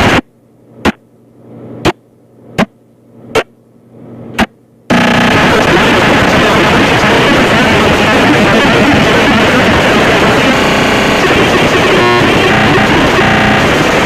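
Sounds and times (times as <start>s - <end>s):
loud harsh distorted noise: 0.0s - 0.2s, 4.4s - 14.0s
faint low hum: 0.0s - 14.0s.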